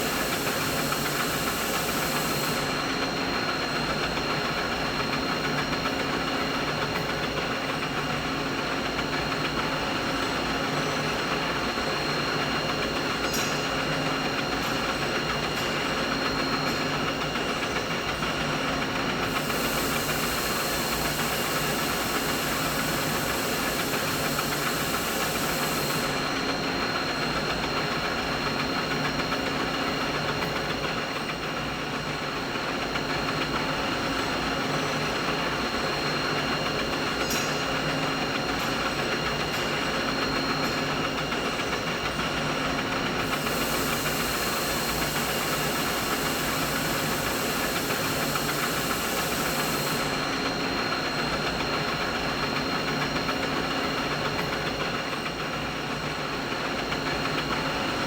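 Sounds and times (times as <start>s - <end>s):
high hiss: 19.3s - 26.2s, 43.3s - 50.3s
machinery drone with whining tones: 43.2s - 53.3s.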